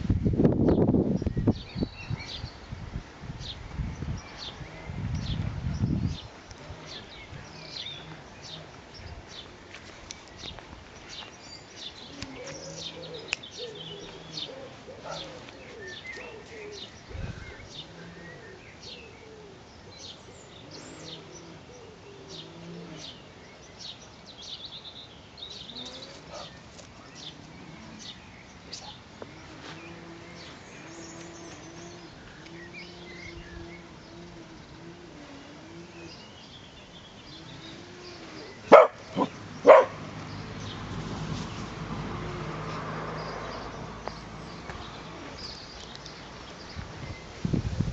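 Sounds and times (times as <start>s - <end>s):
birds chirping: 0.0s - 47.9s
dog barking: 14.9s - 15.4s, 38.7s - 40.0s.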